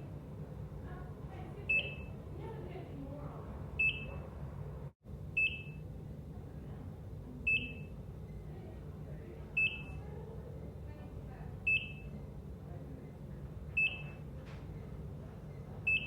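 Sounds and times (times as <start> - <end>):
low room hum: 0.0 - 16.0
heart monitor beeping: 1.7 - 2.1, 5.4 - 5.8, 11.7 - 12.1, 13.8 - 14.2.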